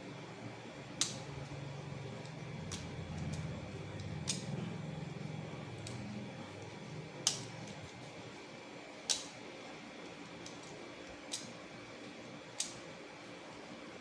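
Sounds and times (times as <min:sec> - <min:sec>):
sharp clicks of wire cutter: 0:01.0 - 0:01.2, 0:04.0 - 0:04.5, 0:07.2 - 0:07.5, 0:09.1 - 0:09.4, 0:11.3 - 0:11.5, 0:12.6 - 0:12.8.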